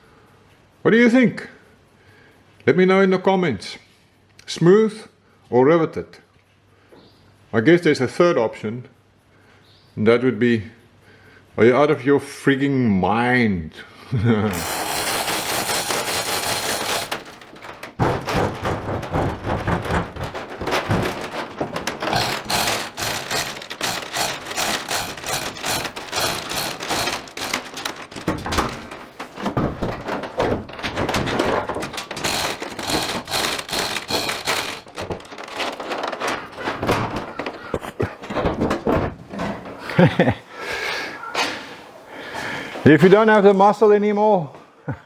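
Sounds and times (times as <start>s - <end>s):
knocks and clatter on steel panel: 14.5s - 40.3s.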